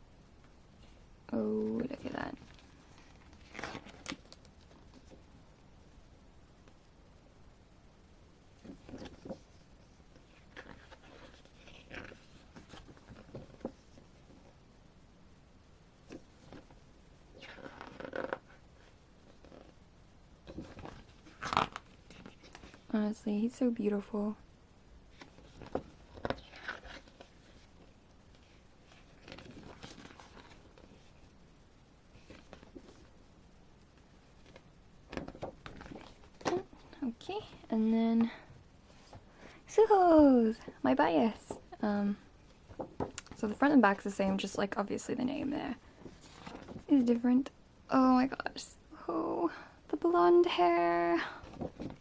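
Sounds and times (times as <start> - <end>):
glossy paper pages turning: 2.4 - 5.1, 10.2 - 13.7, 20.5 - 22.8, 25.2 - 31.2
paper crinkling: 2.4 - 5.2, 25.1 - 31.3, 34.3 - 37.1, 45.9 - 47.0
pages rustling and tapping: 8.6 - 14.5, 16.1 - 16.8, 17.4 - 19.7, 20.4 - 22.9, 25.1 - 31.2, 32.2 - 33.1, 34.3 - 37.0, 42.5 - 44.0, 45.9 - 47.0, 51.4 - 52.0.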